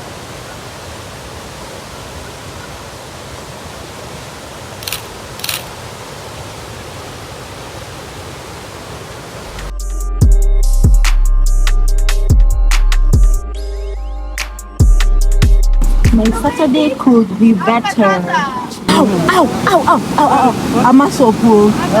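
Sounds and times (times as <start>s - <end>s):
waterfall rushing: 0.0s - 9.7s, 16.0s - 22.0s
electronic music: 9.7s - 16.7s.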